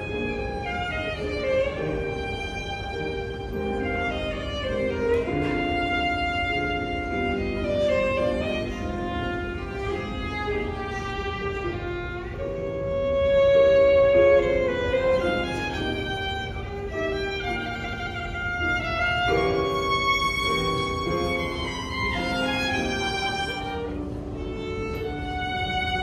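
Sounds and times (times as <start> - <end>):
violin melody: 0.0 - 26.0.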